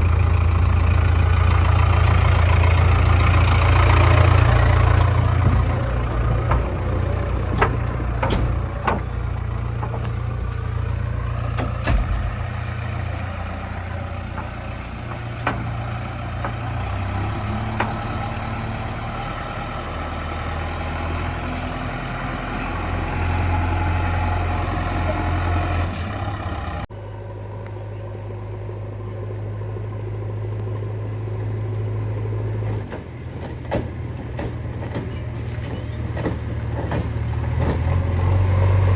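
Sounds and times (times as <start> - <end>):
diesel engine running: 0.0 - 38.9
engine drone: 0.0 - 38.9
sharp knocks: 4.4 - 18.8.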